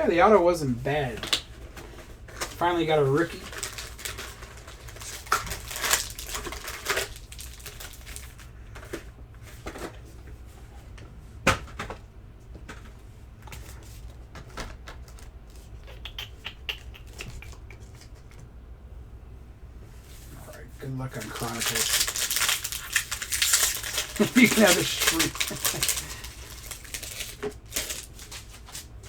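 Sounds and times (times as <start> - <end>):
cards and foil packs handled: 0.8 - 10.1, 12.7 - 15.8, 20.4 - 29.0.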